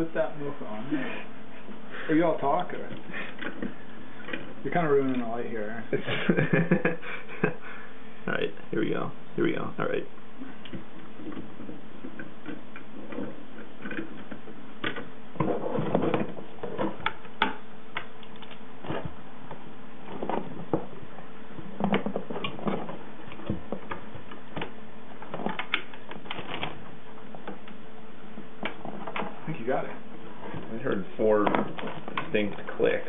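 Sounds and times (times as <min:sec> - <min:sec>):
handling noise: 0:10.2 - 0:33.0.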